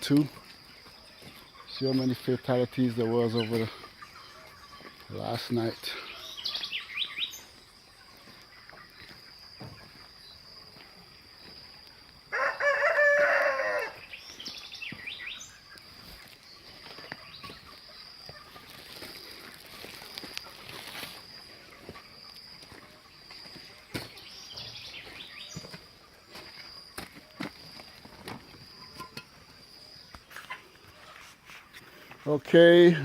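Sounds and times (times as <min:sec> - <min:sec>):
chickens clucking and chirping: 0:00.0 - 0:33.0
rooster crowing: 0:12.3 - 0:14.0.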